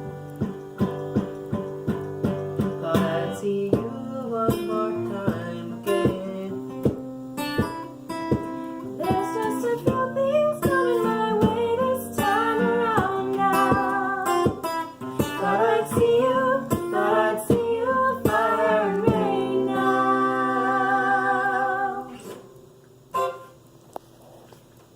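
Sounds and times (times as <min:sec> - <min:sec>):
strummed acoustic guitar: 0:00.0 - 0:23.6
person singing: 0:02.8 - 0:06.9, 0:09.0 - 0:22.4.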